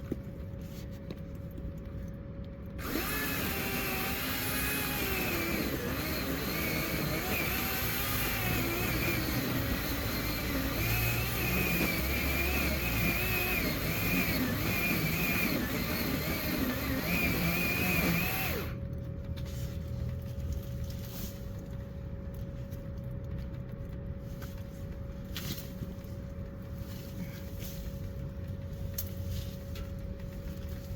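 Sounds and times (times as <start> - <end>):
faint steady hum: 0.0 - 30.9
electric chainsaw cutting wood: 2.8 - 18.8.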